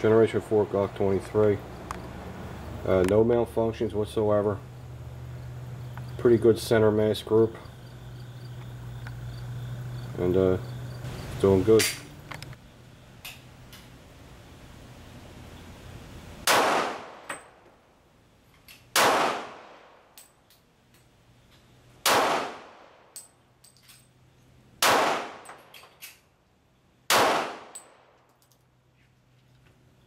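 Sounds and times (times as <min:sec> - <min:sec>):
pistol shots: 0:16.4 - 0:17.5, 0:18.9 - 0:20.1, 0:22.0 - 0:23.1, 0:24.8 - 0:25.7, 0:27.1 - 0:28.2.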